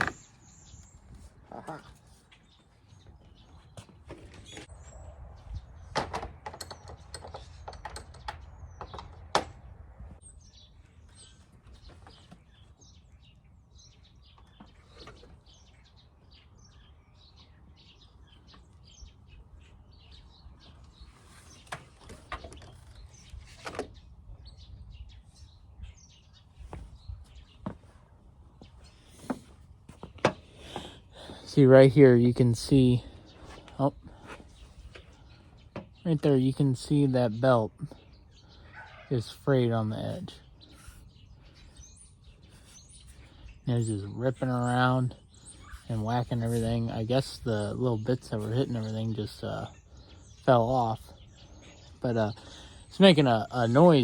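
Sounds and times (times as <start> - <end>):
birds chirping: 0.0 - 54.0
tools and metal parts clicking: 6.4 - 9.2.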